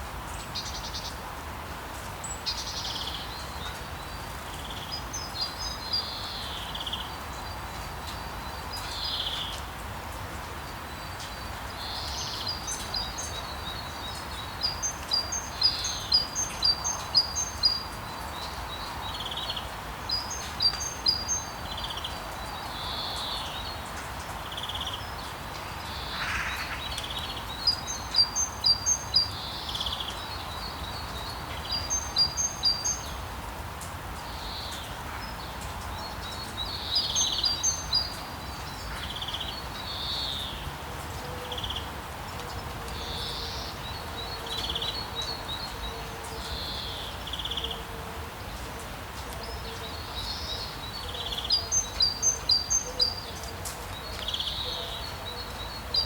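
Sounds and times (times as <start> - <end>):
steady outdoor hiss: 0.0 - 56.0
small birds chirping: 10.6 - 33.3, 34.2 - 47.8, 49.3 - 56.0.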